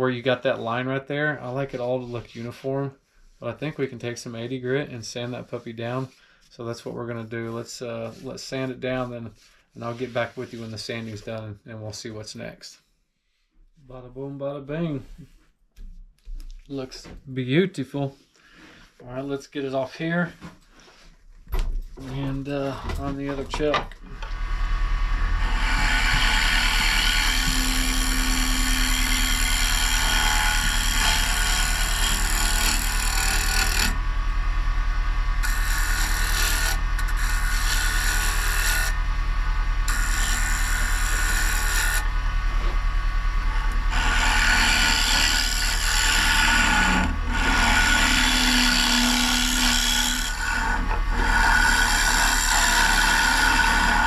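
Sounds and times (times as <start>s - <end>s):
wood lathe motor hum: 24.1s - 54.0s
rasping rub of wood: 25.4s - 34.0s, 35.4s - 39.0s, 39.9s - 42.1s, 43.6s - 54.0s.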